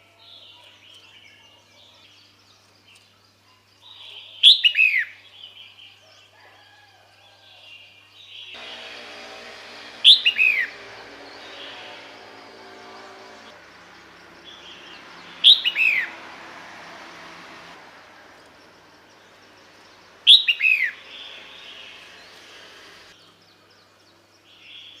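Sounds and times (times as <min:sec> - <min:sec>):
bird calling with falling notes: 0:08.6 - 0:17.6, 0:19.3 - 0:23.2.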